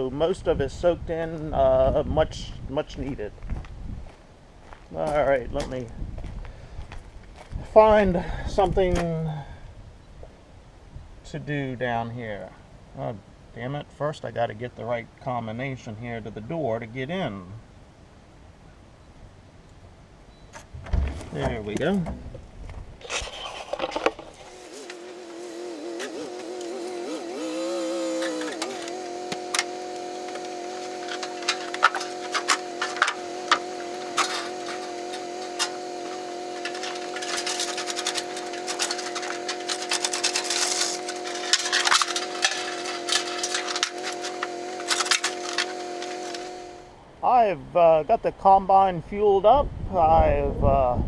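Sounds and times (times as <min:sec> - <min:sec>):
motor humming: 0:24.3 - 0:46.9.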